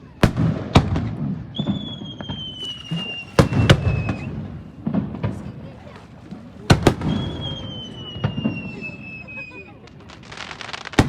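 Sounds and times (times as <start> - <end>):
firework bangs: 0.1 - 11.0
firework whistle: 1.6 - 4.8, 6.8 - 9.7.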